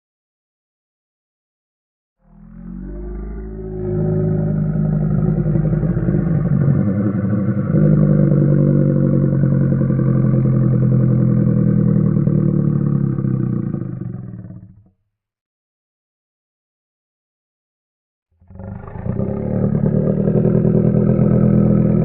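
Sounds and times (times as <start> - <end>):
low dinosaur call: 2.2 - 14.8, 18.4 - 22.0.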